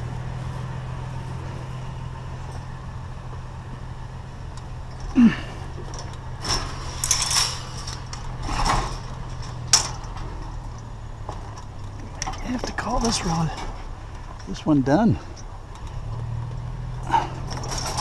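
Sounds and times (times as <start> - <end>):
vehicle engine running: 0.0 - 18.0
objects clanking and rattling: 4.6 - 18.0.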